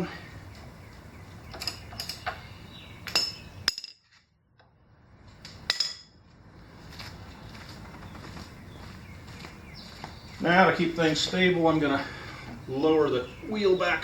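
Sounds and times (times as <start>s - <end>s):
hand tools clinking on metal: 1.5s - 2.4s.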